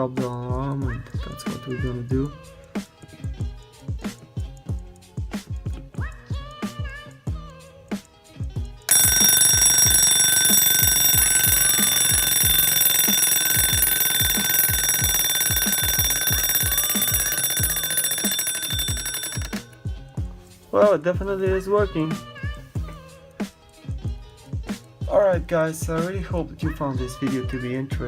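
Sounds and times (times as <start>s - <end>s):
background music with beat: 0.2s - 8.7s, 19.9s - 28.0s
alarm clock bell ringing: 8.9s - 19.8s.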